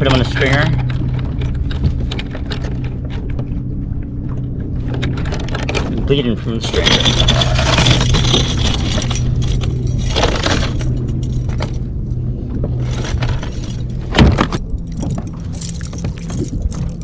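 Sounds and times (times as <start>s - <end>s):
metal gear clinking and rattling: 4.9s - 12.1s, 12.7s - 17.0s.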